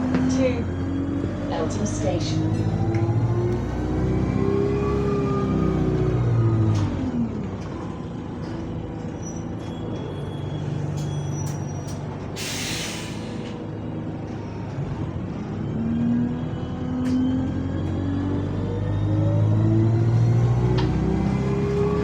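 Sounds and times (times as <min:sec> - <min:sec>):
bus engine and gearbox whine: 0:00.0 - 0:22.0
air brake hiss: 0:12.4 - 0:13.6.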